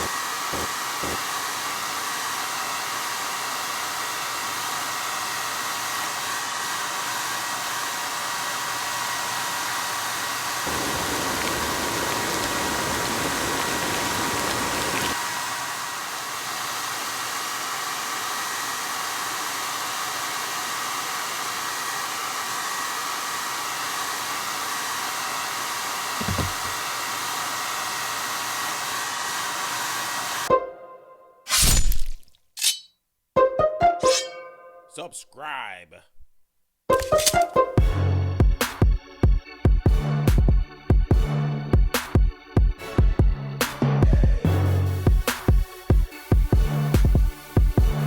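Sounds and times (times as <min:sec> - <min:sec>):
hair dryer running: 0:00.0 - 0:30.5.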